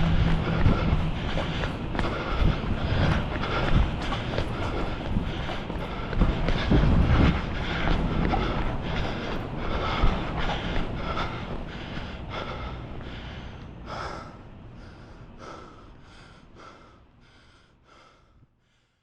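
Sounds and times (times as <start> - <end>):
low rumble: 0.0 - 17.4
person panting: 0.0 - 19.0.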